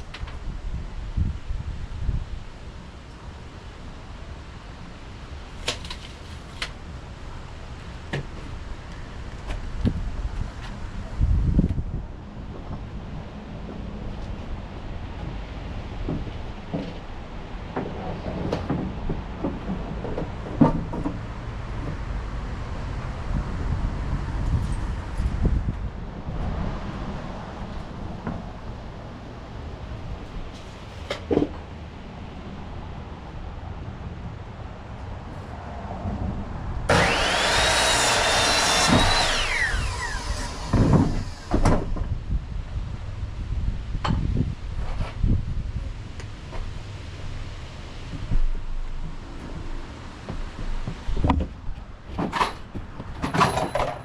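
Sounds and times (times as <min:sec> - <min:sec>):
wind noise on microphone: 0:00.0 - 0:03.6, 0:08.2 - 0:30.9, 0:32.3 - 0:54.0
power tool motor whine: 0:36.9 - 0:42.0.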